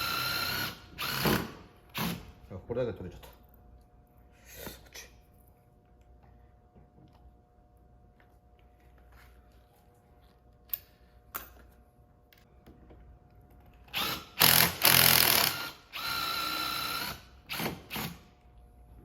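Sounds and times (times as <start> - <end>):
electric drill whining: 0.0 - 1.5, 13.9 - 18.2.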